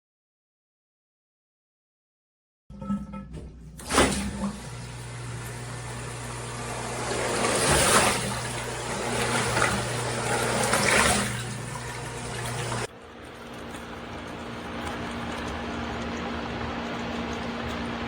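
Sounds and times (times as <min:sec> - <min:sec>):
pump motor hum: 0:02.8 - 0:18.0
water rushing and splashing: 0:03.9 - 0:12.9.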